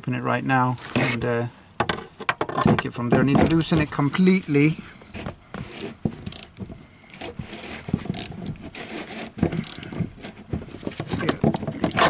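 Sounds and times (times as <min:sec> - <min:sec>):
tool clicking on a locking ring: 0:06.3 - 0:06.6, 0:09.6 - 0:09.9.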